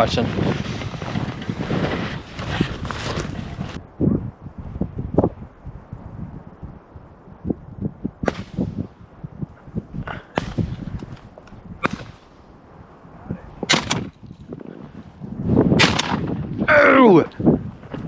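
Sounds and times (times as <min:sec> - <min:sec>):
wind rumble on microphone: 0:00.0 - 0:18.0
shotgun shots: 0:13.7 - 0:14.5.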